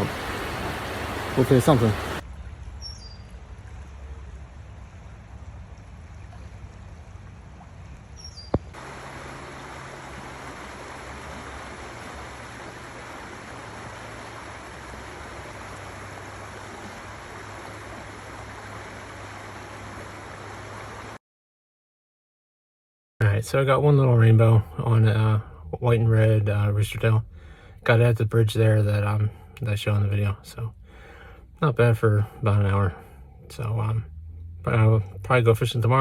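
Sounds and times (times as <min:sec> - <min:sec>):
stream water running: 0:00.0 - 0:21.2.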